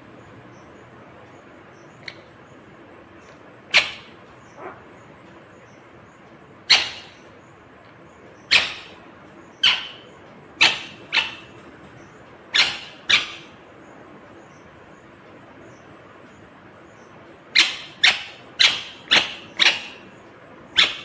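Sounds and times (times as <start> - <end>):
parakeet shrill calls: 3.7 - 4.8, 6.7 - 7.3, 8.4 - 11.6, 12.5 - 13.6, 17.5 - 20.2, 20.8 - 21.0.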